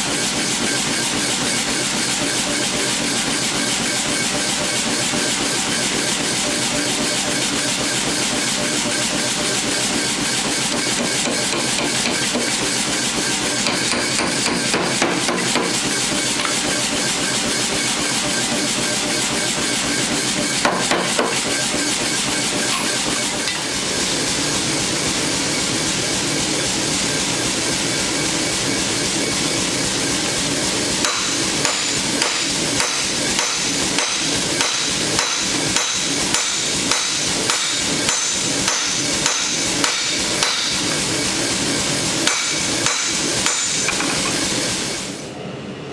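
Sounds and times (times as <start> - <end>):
hammer striking steel: 13.5 - 16.8, 20.5 - 21.9, 31.0 - 41.1, 42.2 - 44.5.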